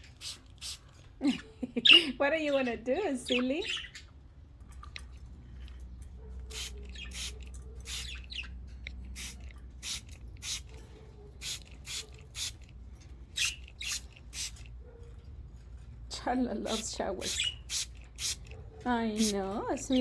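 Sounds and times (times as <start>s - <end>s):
spray bottle squirting: 0.0s - 0.8s, 6.5s - 8.2s, 9.2s - 10.7s, 11.4s - 12.7s, 13.4s - 14.7s, 16.7s - 18.5s
budgerigars chirping: 3.2s - 4.1s, 6.5s - 8.6s, 16.7s - 17.8s.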